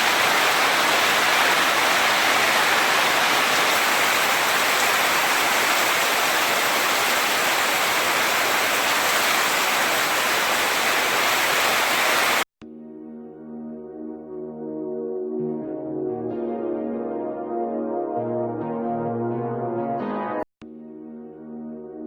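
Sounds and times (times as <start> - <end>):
heavy rain hiss: 0.0 - 12.4
soft ambient music: 12.6 - 22.0.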